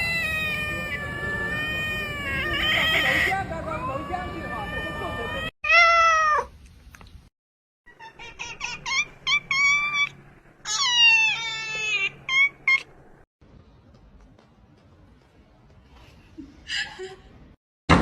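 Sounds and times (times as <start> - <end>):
cat meowing: 0.0 - 3.3, 7.9 - 12.9.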